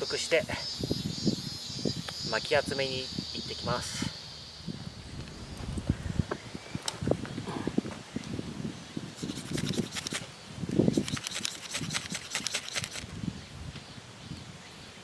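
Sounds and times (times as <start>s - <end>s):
rapid sharp crackles: 9.2s - 10.3s, 10.9s - 13.1s.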